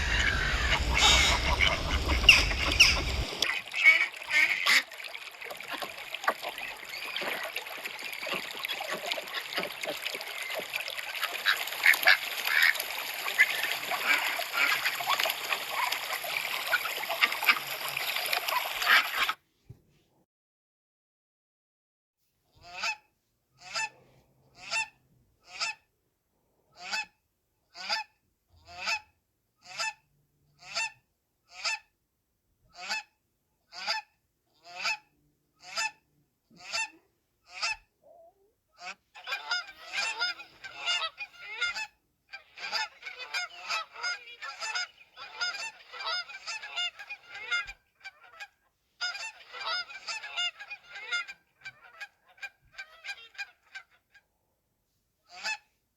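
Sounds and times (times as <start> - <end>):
geese honking: 0.0 - 19.4, 38.8 - 54.0.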